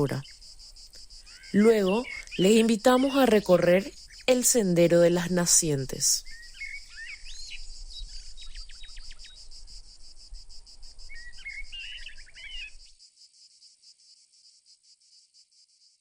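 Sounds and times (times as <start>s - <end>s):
insects chirring: 0.0s - 16.0s
bird whistling calls: 1.3s - 3.2s, 6.2s - 9.4s, 11.1s - 12.8s.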